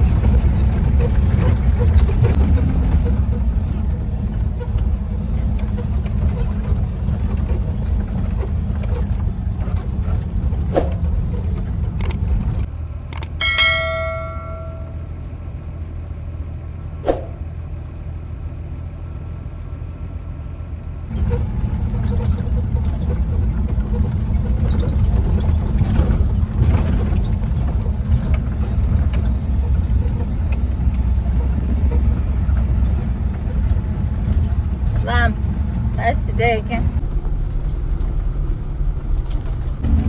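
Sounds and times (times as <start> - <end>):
sharp clicks and knocks: 0.0 - 14.9, 21.1 - 37.0
vehicle engine rumbling: 0.0 - 40.0
bright metallic ring: 13.4 - 15.2.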